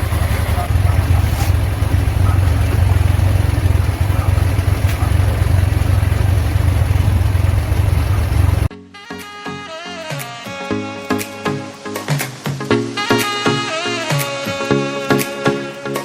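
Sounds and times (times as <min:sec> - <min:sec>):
scooter engine idling: 0:00.0 - 0:08.7
music: 0:08.7 - 0:16.0.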